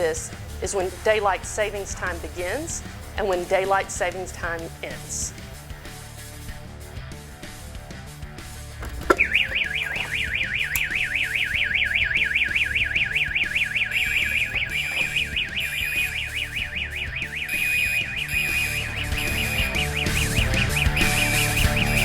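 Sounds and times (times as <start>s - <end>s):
click: 8.8s - 11.0s
fire alarm warbling tone: 9.1s - 22.0s.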